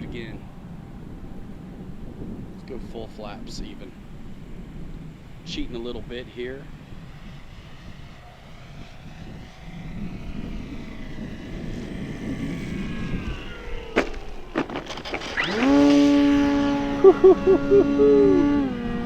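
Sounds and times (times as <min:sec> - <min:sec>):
wind noise on microphone: 0:00.0 - 0:19.0
model plane electric motor whining: 0:09.8 - 0:19.0
sharp knocks: 0:14.0 - 0:15.9.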